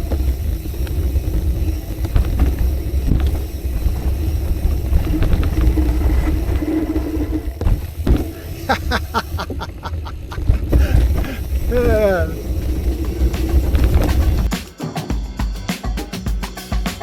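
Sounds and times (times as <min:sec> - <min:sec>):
wind buffeting microphone: 0:00.0 - 0:14.5.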